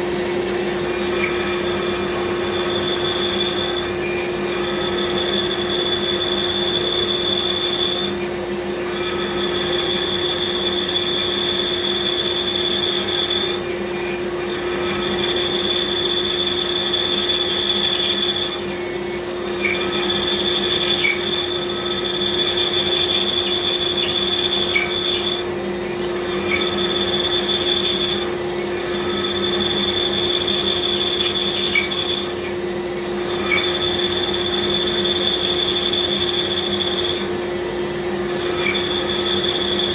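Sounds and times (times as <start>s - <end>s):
bandsaw cutting wood: 8.8s - 32.6s.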